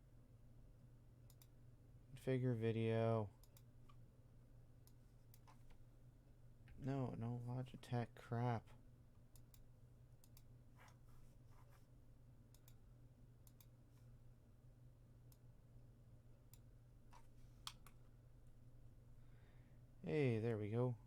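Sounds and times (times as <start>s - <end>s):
low steady hum: 0.0s - 21.0s
computer mouse clicks: 1.3s - 1.5s, 3.4s - 4.0s, 4.8s - 5.7s, 9.3s - 11.0s, 12.5s - 12.8s, 13.4s - 13.8s, 16.5s - 18.0s.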